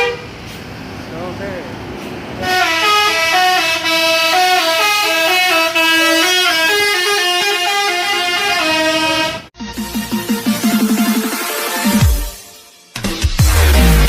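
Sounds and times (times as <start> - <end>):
musical air horn melody: 0.0 - 0.4, 2.4 - 12.8.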